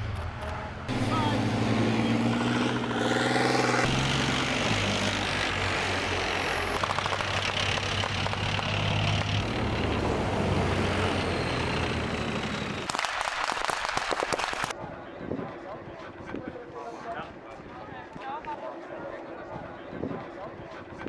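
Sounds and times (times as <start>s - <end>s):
tank engine running: 0.0s - 14.7s
rapid clatter of sharp clicks: 6.7s - 9.4s, 12.9s - 14.7s.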